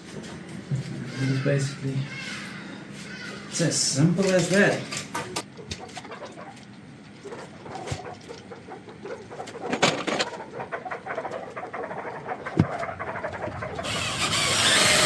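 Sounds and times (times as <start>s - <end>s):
screws and timber clicking: 13.3s - 15.0s.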